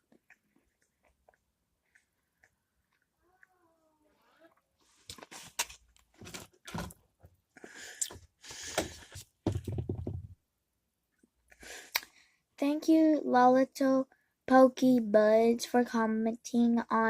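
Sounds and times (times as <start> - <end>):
person chewing sticky sweet: 0.0 - 3.6.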